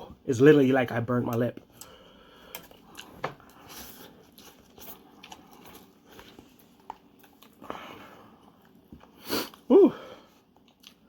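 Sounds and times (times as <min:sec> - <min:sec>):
soft chewing: 0:00.5 - 0:11.0.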